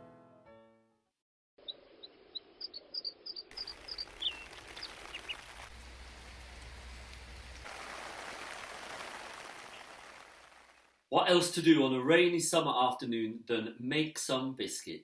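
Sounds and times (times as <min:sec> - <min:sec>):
small bird chirping: 0:01.6 - 0:07.6
rain falling: 0:03.5 - 0:11.1.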